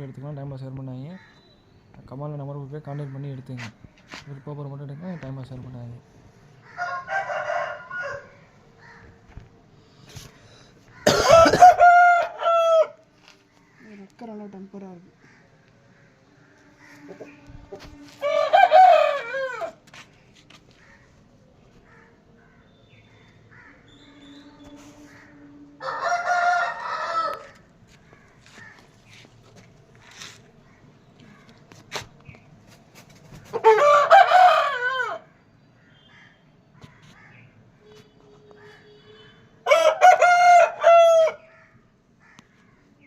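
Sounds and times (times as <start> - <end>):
rooster crowing: 6.6 - 9.0, 11.0 - 13.0, 18.0 - 19.8, 25.0 - 27.7, 33.6 - 35.4, 39.6 - 41.7.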